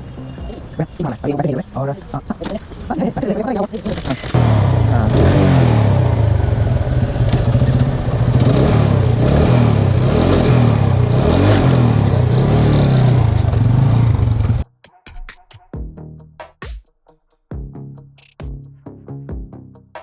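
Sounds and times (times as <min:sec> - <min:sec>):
motorcycle engine running: 0:04.2 - 0:14.6.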